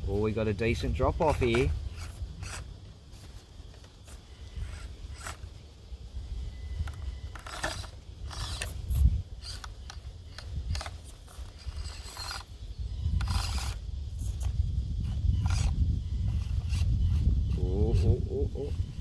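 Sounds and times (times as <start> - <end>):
small electric motor whining: 1.1 - 19.0
tyres scraping on stone: 1.3 - 5.5, 7.3 - 12.5, 13.2 - 14.5.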